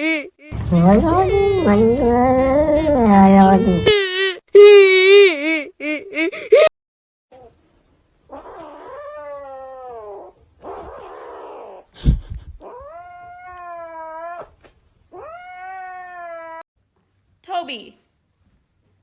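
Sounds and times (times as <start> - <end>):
cat yowling: 15.2 - 16.6.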